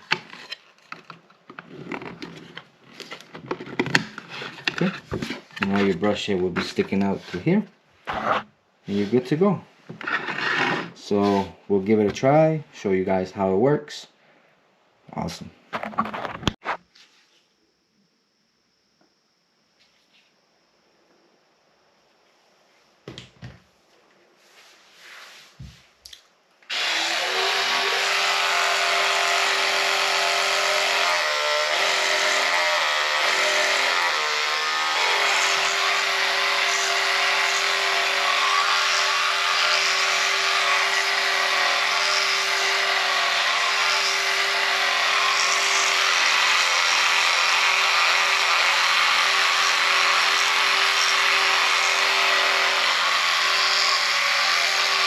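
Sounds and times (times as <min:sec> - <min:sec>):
electric toothbrush buzzing: 0:26.7 - 0:55.0.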